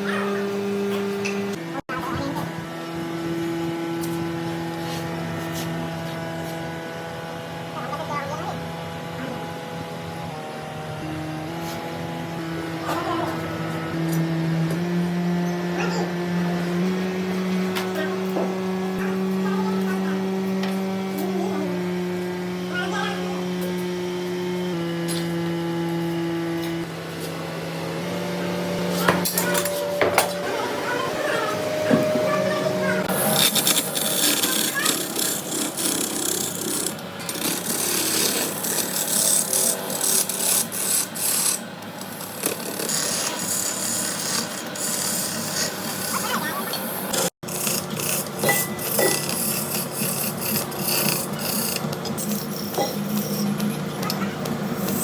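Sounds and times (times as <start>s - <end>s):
machinery motor hum: 0.0s - 40.7s, 41.6s - 55.0s
faint voices: 28.8s - 33.5s
tool rasping against brass: 28.8s - 46.1s, 47.4s - 55.0s.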